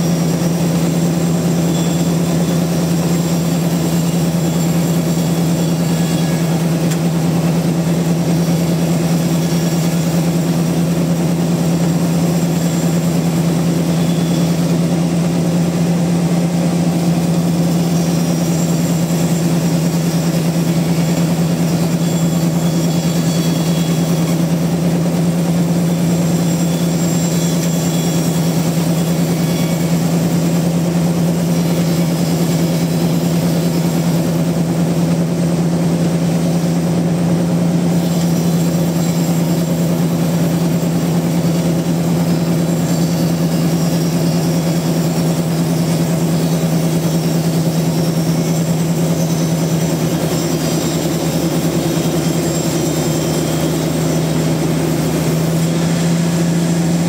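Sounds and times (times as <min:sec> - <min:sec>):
sawmill machinery drone: 0:00.0 - 0:57.0.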